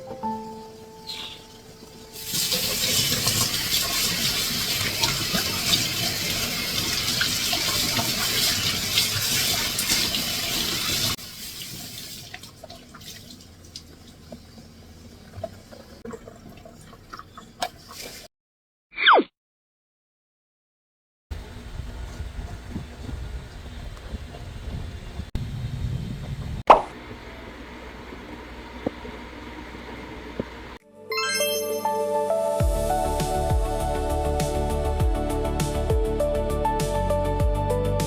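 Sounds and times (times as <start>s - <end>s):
running water: 0.0s - 18.3s.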